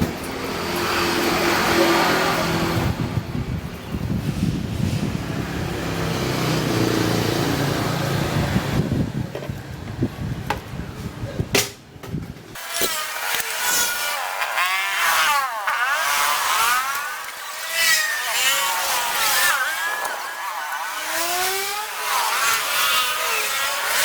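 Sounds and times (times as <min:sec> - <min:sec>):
scooter engine revving: 0:00.0 - 0:10.2, 0:12.7 - 0:24.0.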